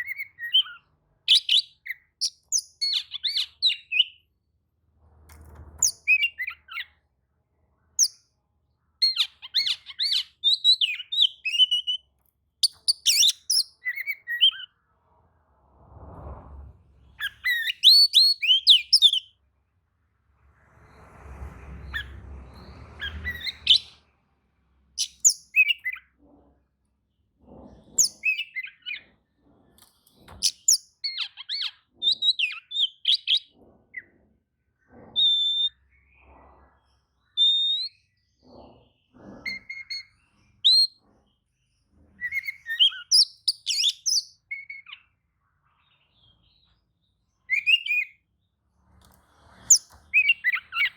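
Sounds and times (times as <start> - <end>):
bird singing whistled notes: 0.0 - 4.2, 8.0 - 8.2, 9.0 - 14.7, 17.2 - 19.4, 23.0 - 24.0, 25.0 - 26.0, 35.2 - 35.8, 37.4 - 38.2, 42.2 - 45.1, 47.4 - 48.2, 49.7 - 50.9.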